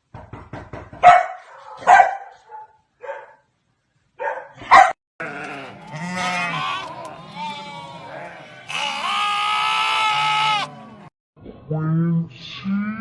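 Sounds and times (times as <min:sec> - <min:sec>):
background noise: 0:00.0 - 0:13.0
wavering animal cries: 0:05.2 - 0:11.1.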